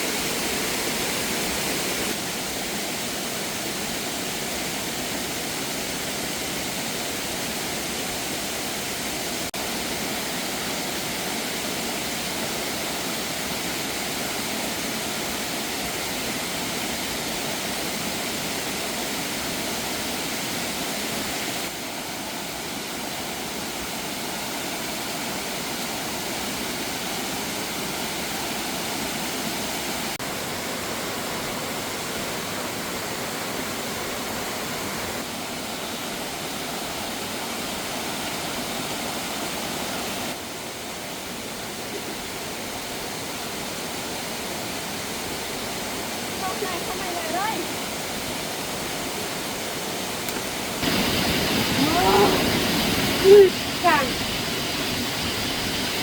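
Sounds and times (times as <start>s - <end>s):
water rushing: 0.0s - 56.0s.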